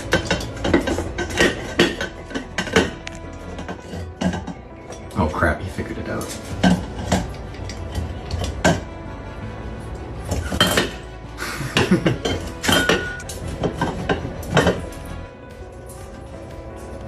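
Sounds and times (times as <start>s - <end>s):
container lid clinking and clattering: 0.0s - 5.2s, 6.2s - 8.9s, 10.3s - 11.0s, 11.7s - 15.2s.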